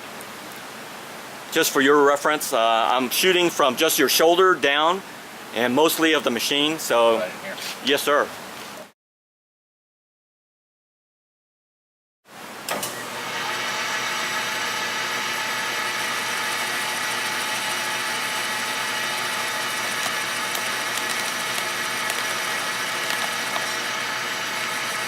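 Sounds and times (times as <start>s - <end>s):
lathe motor whirring: 12.7s - 25.0s.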